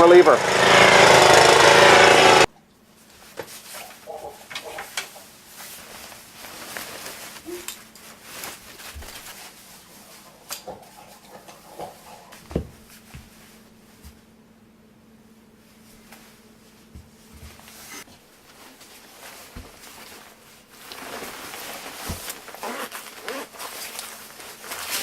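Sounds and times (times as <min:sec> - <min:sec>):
snowblower engine running: 0:00.0 - 0:02.5
faint steady hum: 0:02.4 - 0:25.0.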